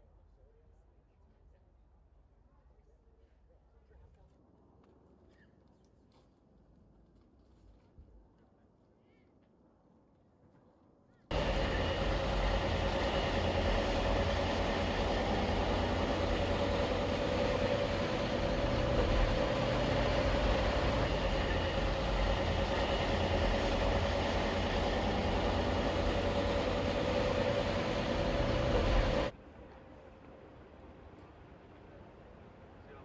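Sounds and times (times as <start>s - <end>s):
mid-pitched hum: 11.3s - 29.3s
moving truck rumble: 11.3s - 29.3s.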